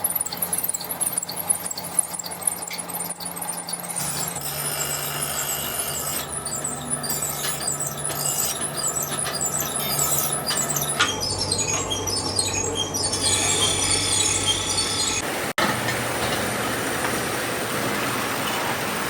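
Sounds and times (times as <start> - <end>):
high-pitched metal squealing: 0.0 - 15.2.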